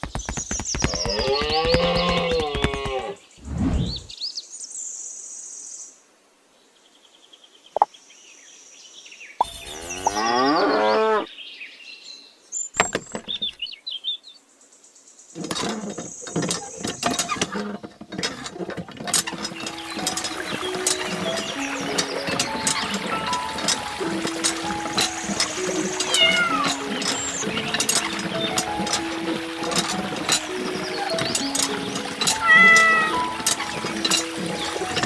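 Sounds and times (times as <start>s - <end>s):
cow mooing: 9.7s - 11.2s, 32.3s - 33.4s
short clicks and knocks: 12.8s - 13.6s, 15.4s - 29.0s.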